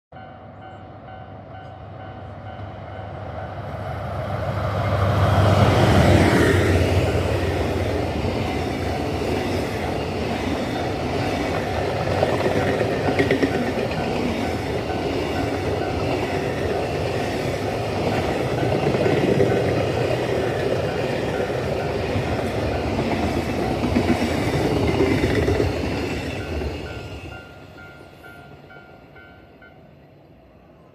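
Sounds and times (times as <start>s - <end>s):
train rumble: 0.2s - 30.5s
wheels clacking over rail joints: 7.0s - 27.3s.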